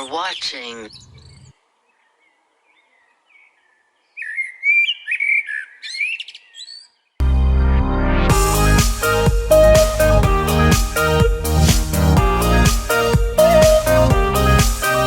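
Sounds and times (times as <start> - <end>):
bird chirping: 0.0 - 7.2
loud electronic music: 7.2 - 15.0.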